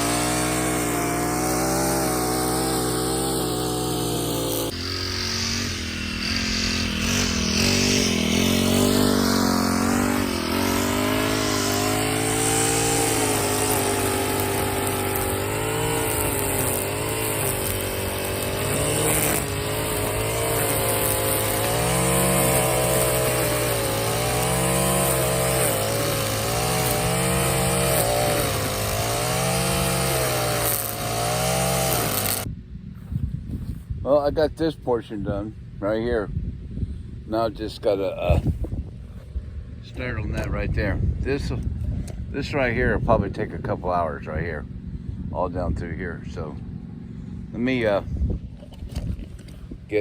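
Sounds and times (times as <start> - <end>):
string trimmer engine revving: 0.0 - 32.5.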